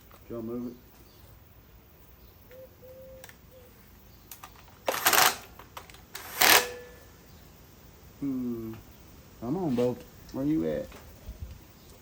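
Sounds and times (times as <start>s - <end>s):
rustling and scraping of tools: 9.7s - 10.1s.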